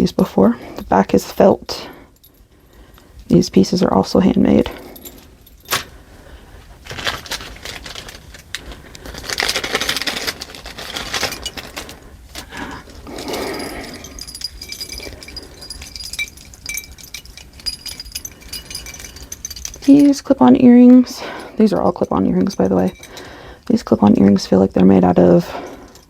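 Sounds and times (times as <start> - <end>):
rustling handling noise: 4.4 - 20.2.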